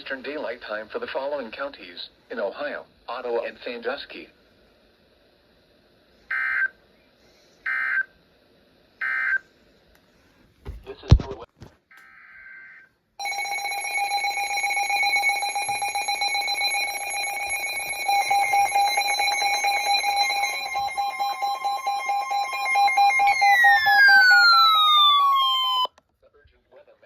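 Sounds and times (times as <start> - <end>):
two-tone electronic alarm: 6.3 - 6.7, 7.7 - 8.1, 9.0 - 9.4, 11.9 - 25.9
tone gliding downward: 16.8 - 25.9.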